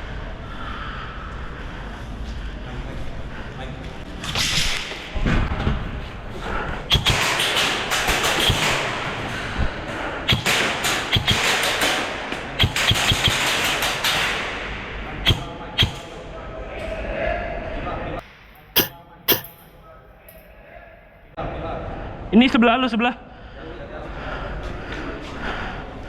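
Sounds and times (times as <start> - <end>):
airsoft guns firing: 6.9 - 9.2, 10.3 - 16.1.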